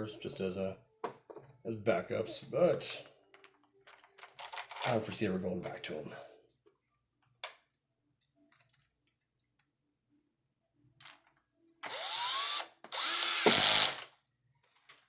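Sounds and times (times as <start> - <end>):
electric drill spinning up: 11.8 - 14.1.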